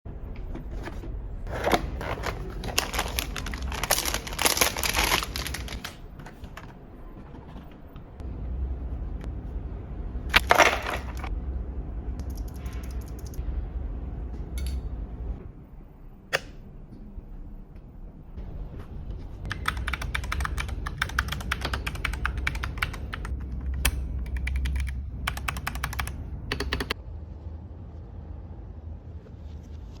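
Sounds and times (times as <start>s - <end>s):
handling sounds: 0.3s - 6.8s, 10.3s - 11.3s.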